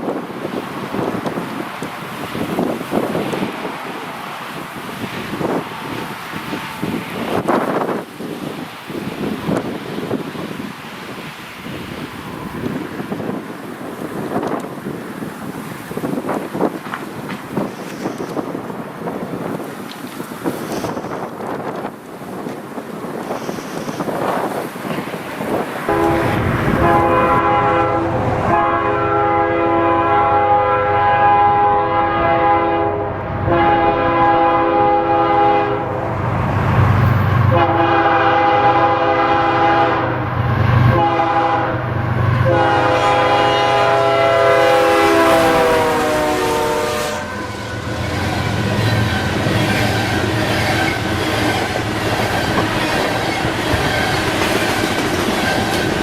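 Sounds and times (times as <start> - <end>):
train air horn blasts: 25.9 - 36.0, 37.5 - 40.2, 40.8 - 48.5
train wheels clattering: 47.8 - 56.0.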